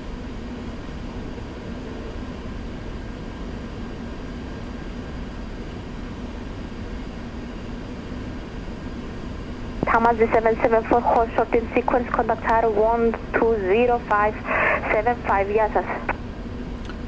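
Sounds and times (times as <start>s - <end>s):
jet engines idling: 9.0s - 16.7s
faint steady tones: 9.8s - 16.3s.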